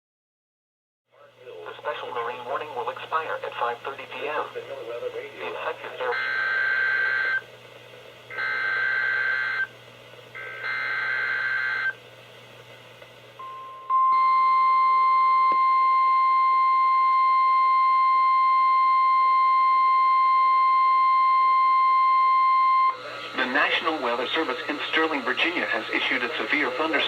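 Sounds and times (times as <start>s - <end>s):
steady warning alarm tone: 6.0s - 7.5s, 8.3s - 9.7s, 10.4s - 12.0s, 13.4s - 27.0s.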